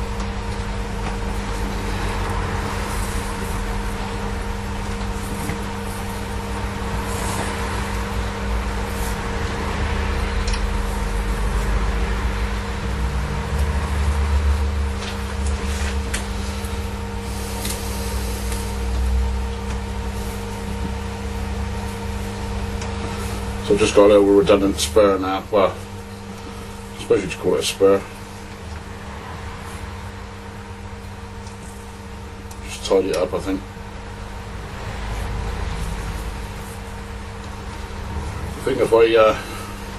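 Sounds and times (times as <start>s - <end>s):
machine hum with low rumble: 0.0s - 39.9s.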